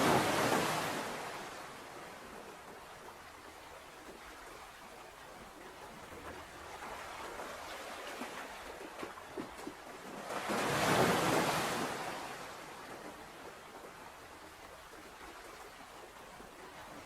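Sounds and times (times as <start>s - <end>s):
hiss of surf: 0.0s - 1.6s
ocean waves breaking: 0.0s - 17.0s.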